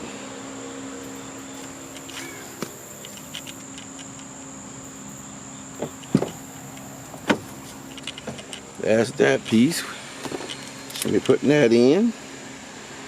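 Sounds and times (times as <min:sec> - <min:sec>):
high-pitched whine: 0:00.0 - 0:13.0
knocks and clacks of parts: 0:01.6 - 0:04.5, 0:05.8 - 0:08.7.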